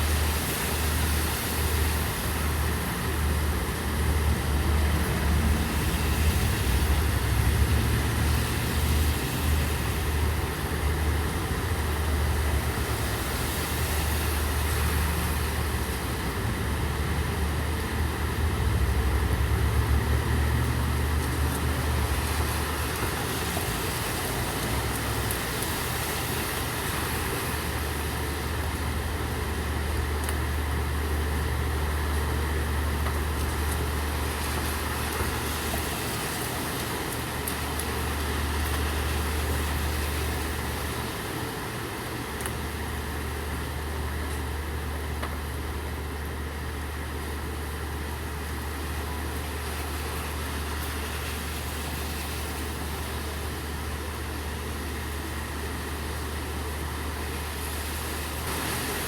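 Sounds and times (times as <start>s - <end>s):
vehicle engine running: 0.0s - 26.2s
steady rain falling: 0.0s - 59.0s.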